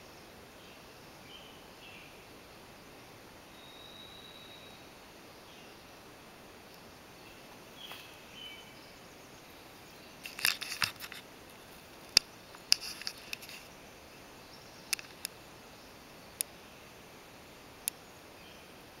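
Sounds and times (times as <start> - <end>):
steady low hiss: 0.0 - 19.0
bird chirps: 3.5 - 5.8
sharp clicks and crackles: 10.2 - 11.2, 12.1 - 13.7, 14.9 - 15.4.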